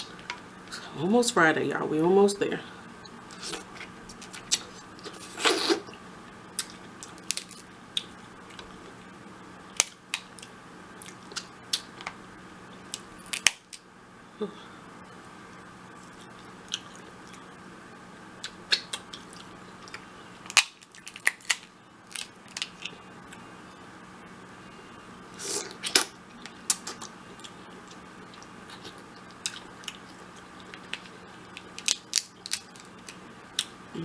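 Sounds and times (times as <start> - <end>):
shells cracking: 30.7 - 33.2.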